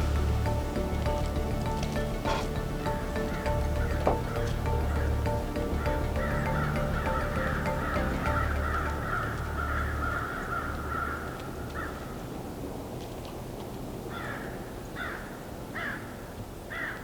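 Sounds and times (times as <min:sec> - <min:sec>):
music: 0:00.0 - 0:11.8
bird calling: 0:00.0 - 0:12.5.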